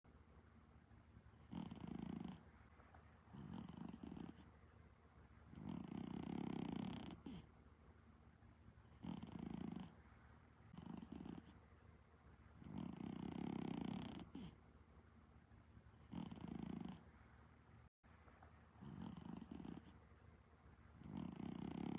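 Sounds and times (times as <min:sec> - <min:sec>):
cat snoring: 0:01.4 - 0:02.5, 0:03.3 - 0:04.5, 0:05.5 - 0:07.5, 0:08.9 - 0:10.0, 0:10.7 - 0:11.6, 0:12.6 - 0:14.6, 0:16.0 - 0:17.0, 0:18.8 - 0:20.0, 0:21.0 - 0:21.9.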